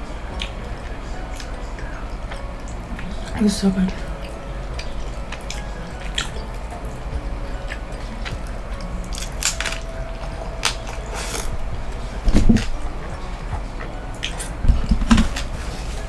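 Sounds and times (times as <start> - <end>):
person chewing: 0.0 - 3.4, 4.0 - 16.0
crunching taco shells: 4.1 - 16.0.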